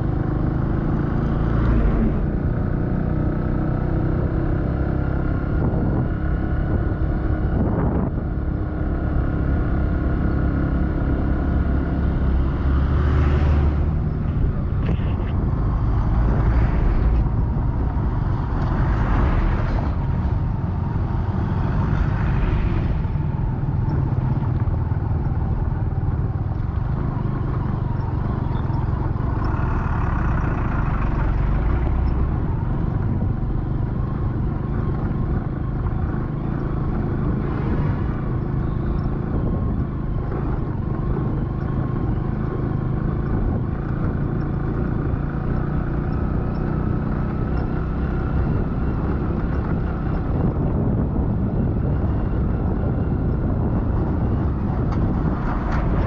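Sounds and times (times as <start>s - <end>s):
vehicle engine running: 5.1s - 56.0s
rushes of noise: 12.1s - 24.8s, 34.3s - 41.6s.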